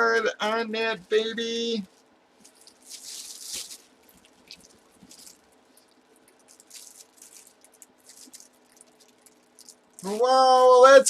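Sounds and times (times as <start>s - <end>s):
low steady hum: 0.0s - 11.0s
packaging rustling and clicks: 2.4s - 10.0s.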